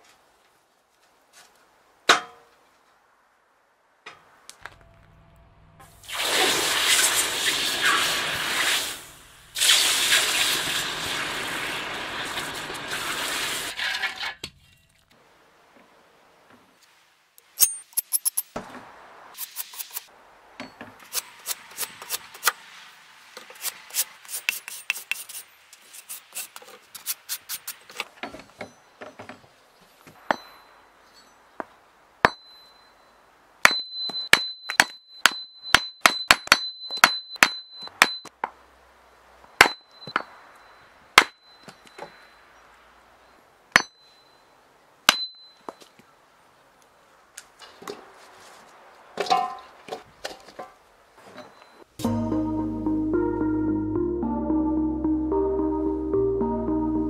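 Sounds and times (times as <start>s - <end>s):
hatchet striking wood: 32.2s - 32.5s, 33.6s - 38.3s, 39.6s - 40.3s, 41.2s - 41.4s, 43.8s - 44.0s, 45.1s - 45.4s.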